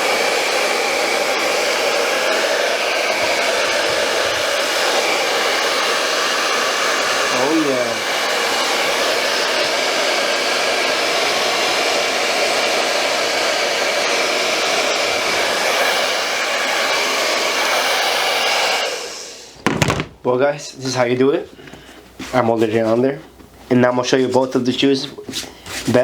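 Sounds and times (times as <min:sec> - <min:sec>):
blow dryer running: 0:00.0 - 0:20.2.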